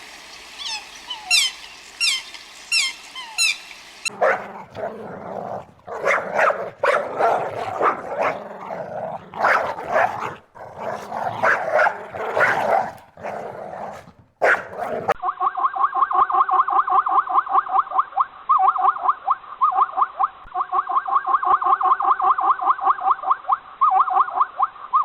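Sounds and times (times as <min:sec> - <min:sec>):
dog barking: 0:04.1 - 0:15.2.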